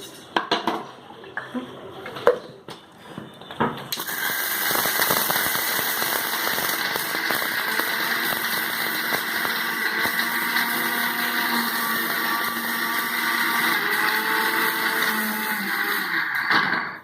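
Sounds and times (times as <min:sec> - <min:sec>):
mixer grinder running: 0:04.0 - 0:17.0.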